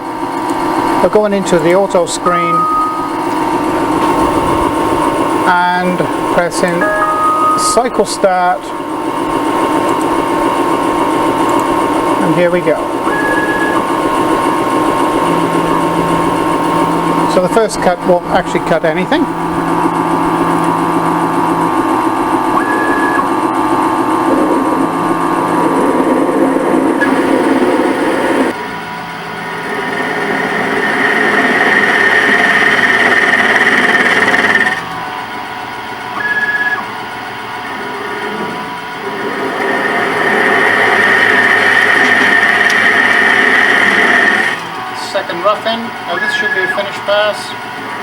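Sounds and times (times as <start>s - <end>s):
high whine: 0.0s - 36.9s, 37.8s - 48.0s
lathe spindle motor running: 0.0s - 48.0s
short beeps: 2.2s - 3.4s, 6.8s - 8.0s, 13.1s - 13.9s, 22.6s - 23.3s, 46.1s - 46.9s.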